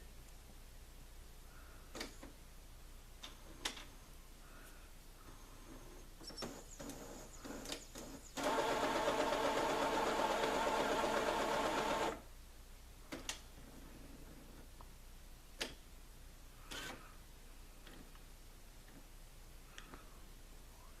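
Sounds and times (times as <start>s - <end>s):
printer motor whirring: 6.8s - 12.2s.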